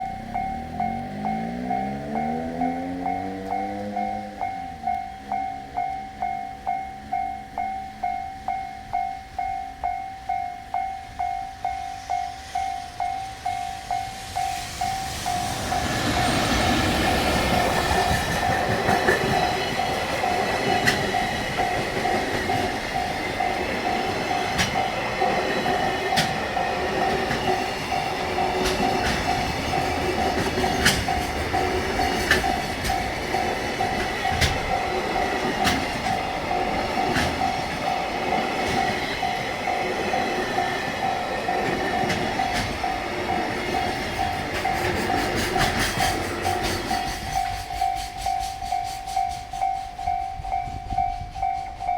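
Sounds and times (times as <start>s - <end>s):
freight train rumbling and rattling: 0.0s - 7.6s, 11.1s - 51.9s
level crossing bell ringing: 0.0s - 16.2s, 17.4s - 51.9s
wheel clicks over rail joints: 26.1s - 37.9s.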